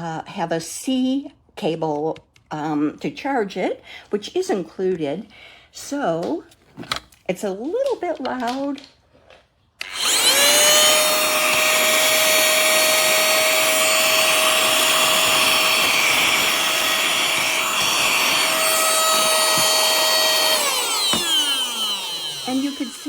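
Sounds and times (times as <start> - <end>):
handheld vacuum whining: 9.8 - 23.0.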